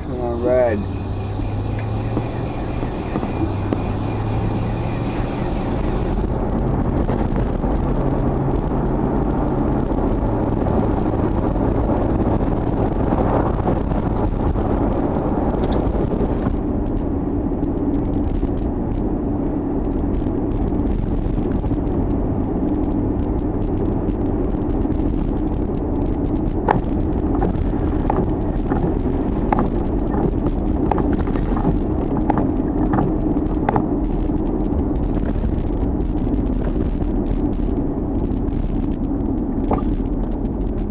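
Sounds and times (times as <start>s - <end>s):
engine and road drone: 0.0s - 40.9s
drive belt chirps: 26.7s - 31.6s, 32.2s - 33.0s, 33.6s - 34.1s.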